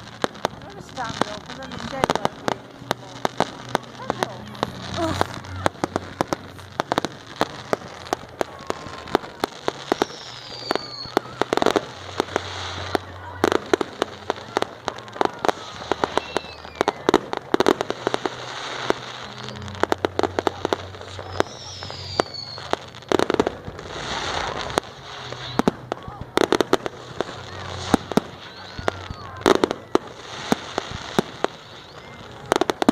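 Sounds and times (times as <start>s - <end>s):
fireworks crackling bangs: 0.0s - 32.9s
firework falling whistles: 4.8s - 25.8s, 27.0s - 32.9s.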